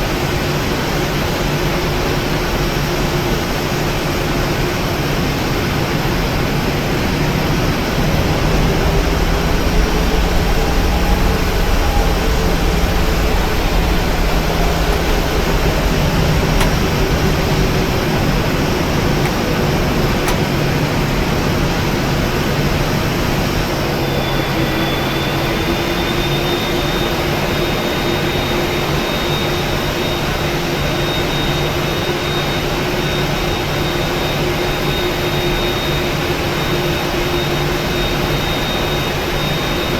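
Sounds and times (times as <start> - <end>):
airplane cabin rushing noise: 7.6 - 24.8.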